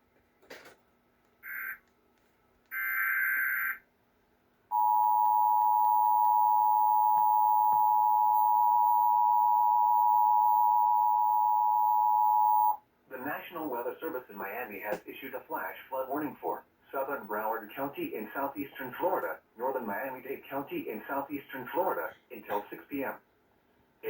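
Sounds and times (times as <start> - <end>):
loud two-tone attention signal: 4.7 - 12.8
buzzy data bursts: 4.8 - 12.8.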